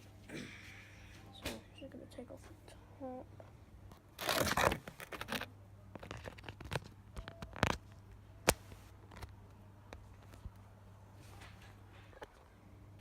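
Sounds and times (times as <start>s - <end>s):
rustling and scraping handling noise: 3.4s - 9.4s, 10.0s - 12.5s.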